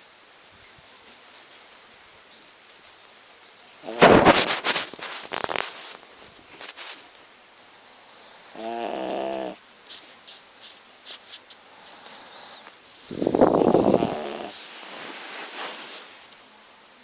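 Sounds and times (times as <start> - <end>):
dog snoring: 8.5 - 9.6, 13.6 - 14.6.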